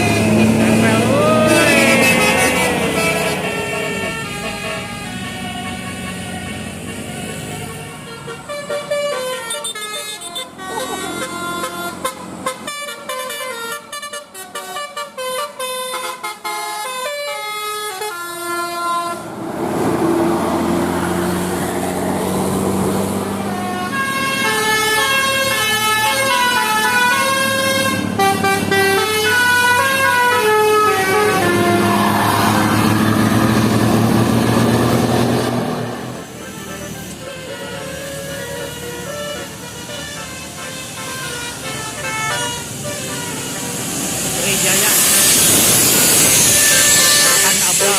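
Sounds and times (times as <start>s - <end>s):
multi-tone bus air horn tune: 0.0s - 19.4s, 20.9s - 47.9s
rushing noise with low hum: 43.4s - 47.8s.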